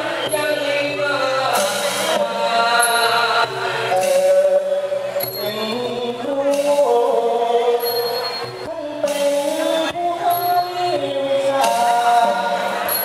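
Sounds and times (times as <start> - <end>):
musical accompaniment: 0.0 - 13.0
high ringing stroke: 7.8 - 8.7, 12.8 - 13.0.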